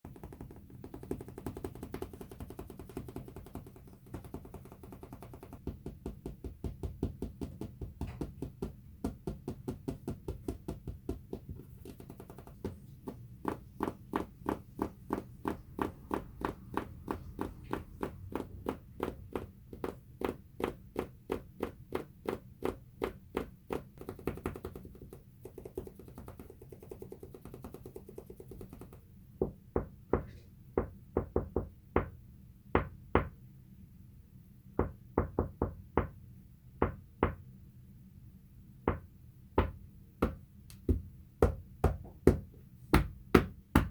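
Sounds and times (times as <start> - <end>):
fingers tapping on floor: 0.0 - 32.1.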